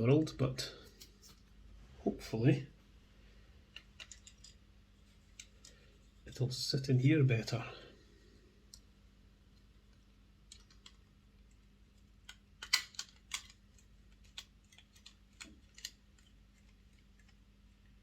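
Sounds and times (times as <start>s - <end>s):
small plastic parts clicking: 3.7s - 4.6s, 9.6s - 17.5s.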